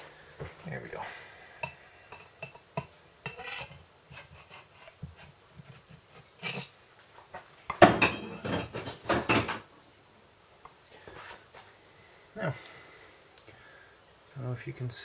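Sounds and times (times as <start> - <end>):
knocks and scrapes: 3.3 - 9.6.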